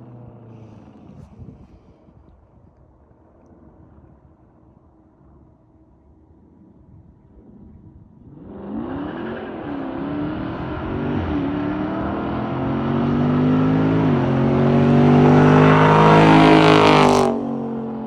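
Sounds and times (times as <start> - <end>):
car engine accelerating hard: 8.3 - 18.0.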